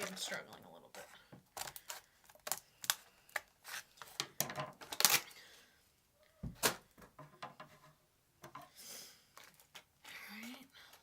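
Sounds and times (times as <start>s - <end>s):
plastic blister pack crackling: 1.4s - 5.4s.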